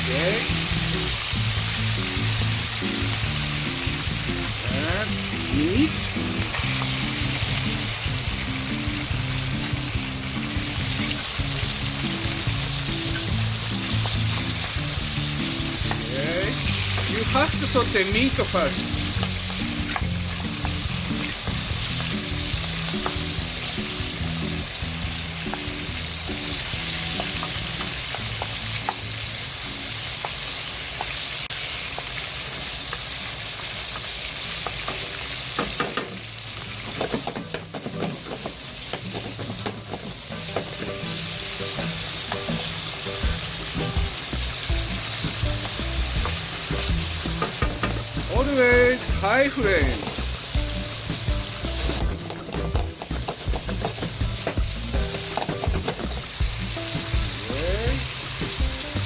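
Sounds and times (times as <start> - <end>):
meat sizzling in a pan: 0.0 - 59.0
spatula clicking in a pan: 15.7 - 16.1, 19.1 - 23.4, 27.0 - 29.1, 51.5 - 56.2.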